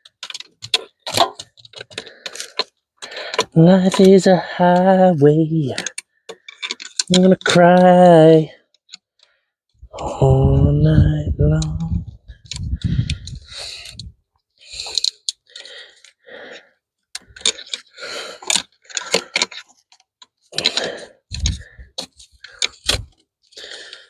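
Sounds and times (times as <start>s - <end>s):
clicks and rattles of connectors: 0.0s - 4.9s, 5.7s - 7.9s, 11.6s - 14.1s, 14.7s - 16.2s, 17.1s - 24.0s.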